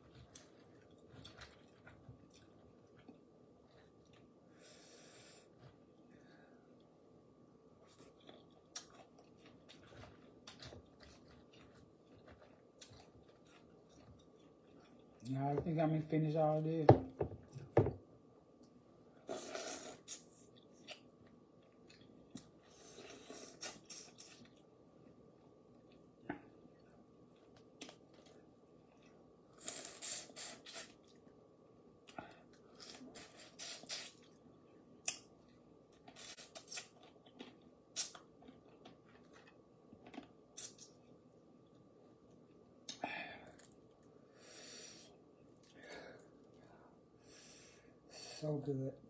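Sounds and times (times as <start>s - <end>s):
slurping: 19.3s - 20.2s.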